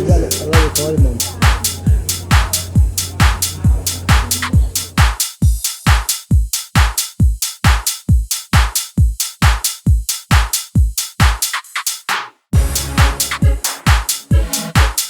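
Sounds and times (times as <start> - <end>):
bass line: 0.0 - 5.0, 12.6 - 13.6
kick drum: 0.0 - 11.5, 12.6 - 15.0
hi-hats: 0.0 - 15.0.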